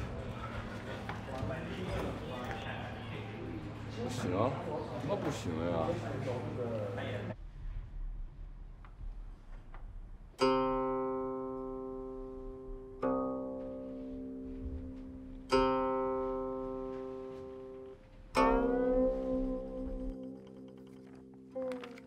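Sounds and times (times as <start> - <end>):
plucked zither notes: 10.4 - 22.0.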